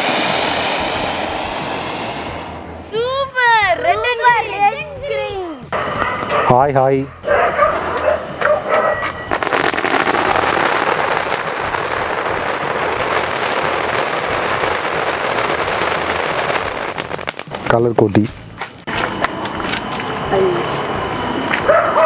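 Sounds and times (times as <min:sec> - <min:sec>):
firework hissing and crackling: 0:00.0 - 0:03.6, 0:07.3 - 0:17.9, 0:18.8 - 0:22.0.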